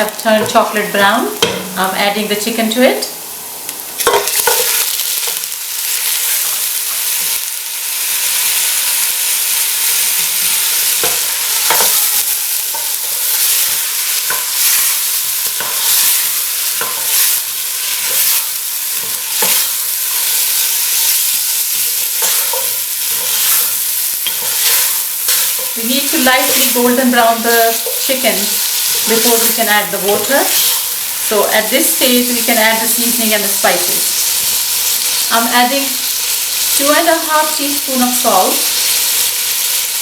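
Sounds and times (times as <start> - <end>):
chicken sizzling in hot oil: 2.4 - 40.0
spoon scraping and knocking pot: 11.0 - 12.0, 16.8 - 17.3, 22.2 - 25.8.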